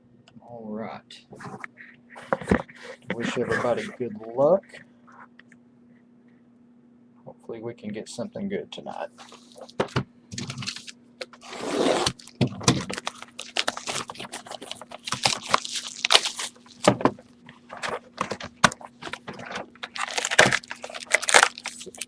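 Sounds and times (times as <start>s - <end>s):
faint steady hum: 0.0s - 22.0s
foil packs crinkling: 10.4s - 22.0s.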